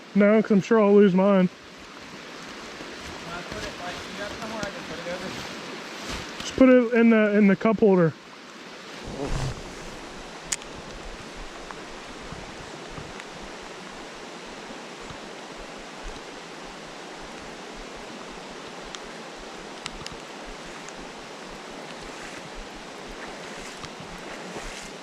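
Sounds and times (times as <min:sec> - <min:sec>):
river water flowing: 0:00.0 - 0:25.0
rain falling: 0:00.4 - 0:07.5, 0:08.2 - 0:25.0
faint ticks: 0:18.8 - 0:19.1, 0:19.7 - 0:21.0.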